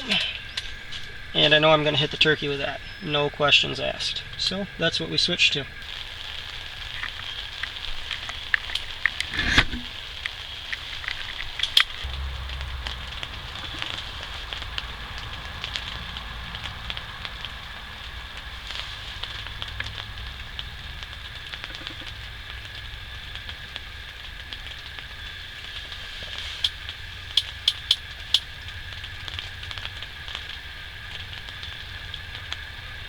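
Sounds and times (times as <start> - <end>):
small scattered clicks and crackles: 5.8 - 33.0
low rumble: 11.3 - 22.4
steady high drone: 11.8 - 21.3.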